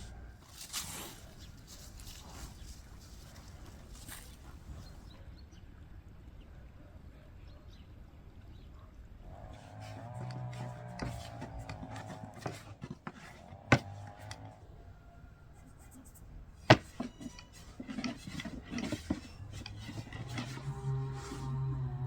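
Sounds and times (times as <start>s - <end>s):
utensils and dishes scraping: 9.6s - 14.6s, 16.6s - 22.0s.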